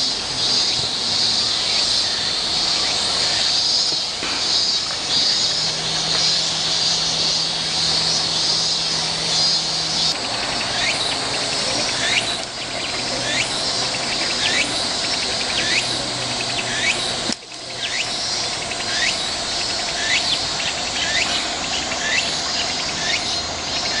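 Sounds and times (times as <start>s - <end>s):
cicadas shrilling: 0.0s - 24.0s.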